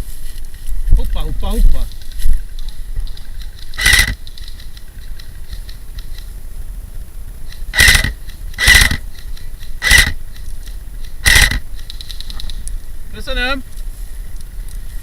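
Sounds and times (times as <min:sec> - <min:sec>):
loud short noise bursts: 0:03.7 - 0:04.3, 0:07.5 - 0:09.1, 0:09.8 - 0:10.2, 0:11.2 - 0:11.7.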